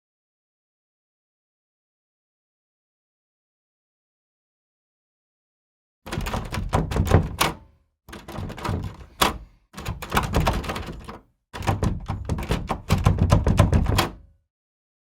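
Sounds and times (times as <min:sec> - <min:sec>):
rapid clattering knocks and thuds: 0:06.1 - 0:14.2.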